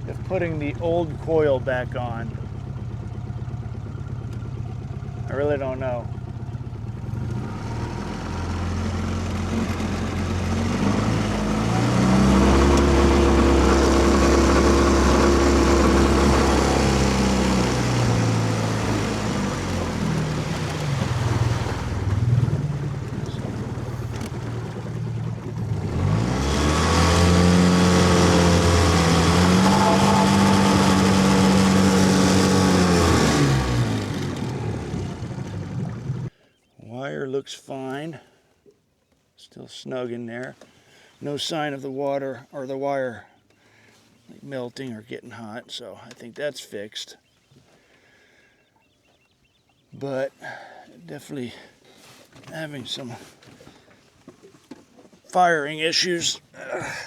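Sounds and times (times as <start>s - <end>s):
outboard motor revving and misfiring: 0.0s - 36.3s.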